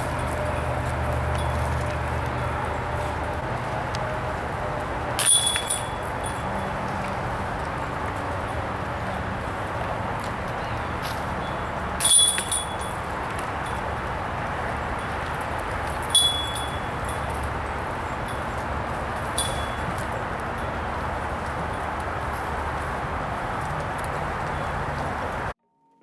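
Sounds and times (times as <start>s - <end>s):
discs striking basket chains: 0.0s - 3.5s, 5.1s - 7.0s, 11.0s - 22.7s.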